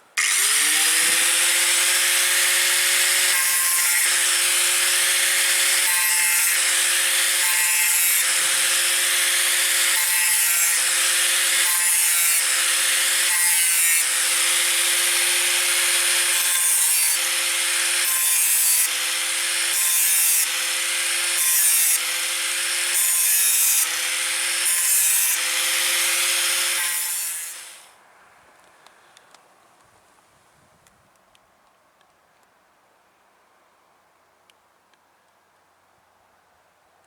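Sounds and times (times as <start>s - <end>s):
power tool sanding: 0.2s - 27.9s.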